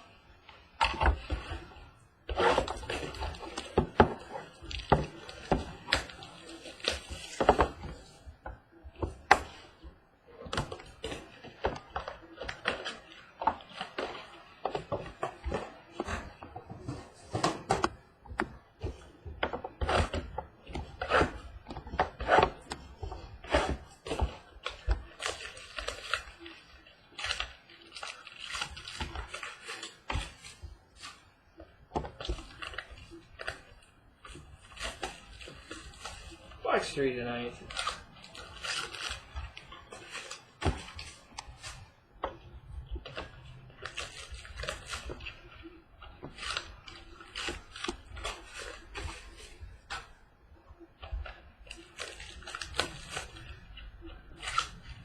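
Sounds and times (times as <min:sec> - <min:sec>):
packaging and cardboard rustling: 0:00.0 - 0:55.0.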